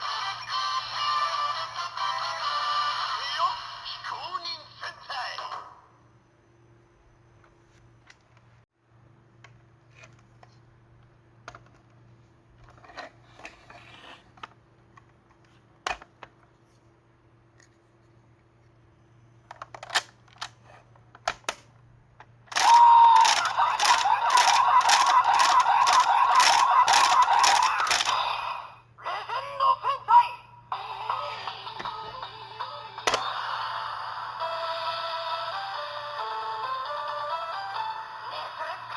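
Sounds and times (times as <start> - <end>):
plastic toy clicks and handling: 19.5 - 20.6, 22.5 - 28.2
toy electronic sound effect: 22.5 - 28.5.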